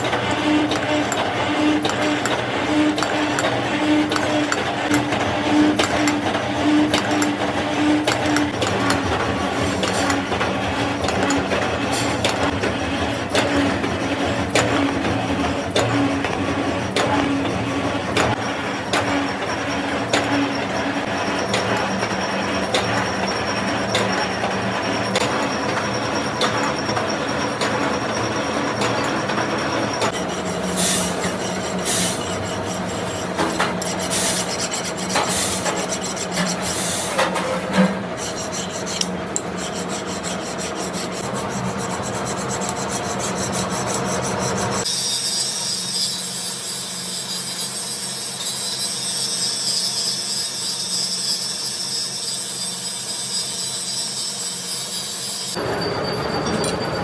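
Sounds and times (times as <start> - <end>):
lathe running: 0.0 - 57.0
metal scraping on metal: 30.0 - 44.9.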